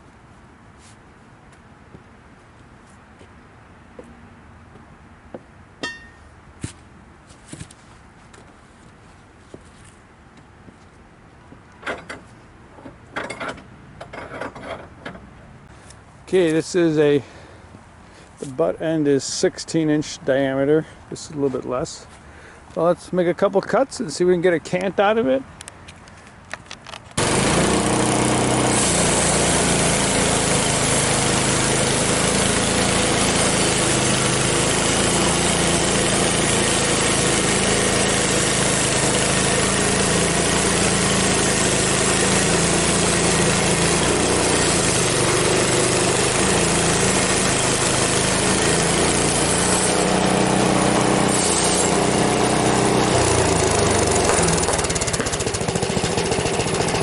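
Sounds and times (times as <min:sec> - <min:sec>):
bandsaw sawmill cutting log: 0:27.2 - 0:57.0.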